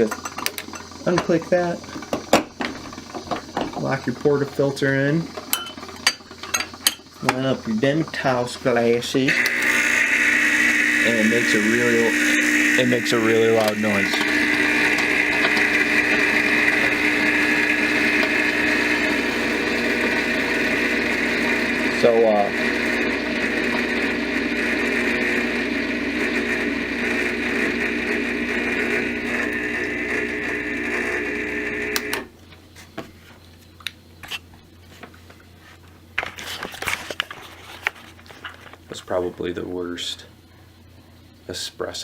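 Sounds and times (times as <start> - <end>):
espresso machine pump buzzing: 9.2 - 32.3
steady hum: 9.3 - 32.4.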